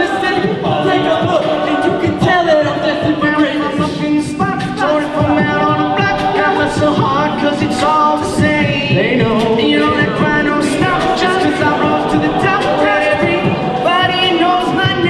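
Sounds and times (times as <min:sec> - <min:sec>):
a cappella group singing: 0:00.0 - 0:15.0
steady beat: 0:00.0 - 0:15.0.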